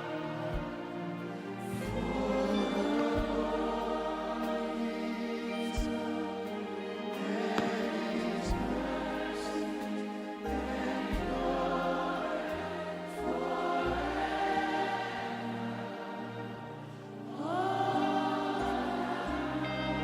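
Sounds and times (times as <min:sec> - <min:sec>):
bass notes: 0:00.0 - 0:14.8
gospel choir singing: 0:00.0 - 0:20.0.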